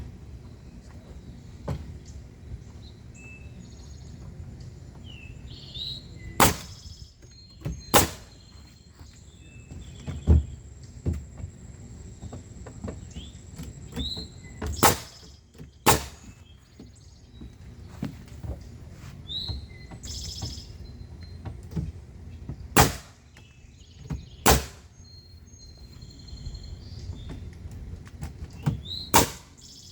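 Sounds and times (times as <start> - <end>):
small birds chirping: 0.0 - 29.9
hammer knocks nailing wood: 6.4 - 6.8, 7.6 - 8.3, 14.6 - 16.4, 22.7 - 23.2, 24.1 - 24.8, 28.6 - 29.6.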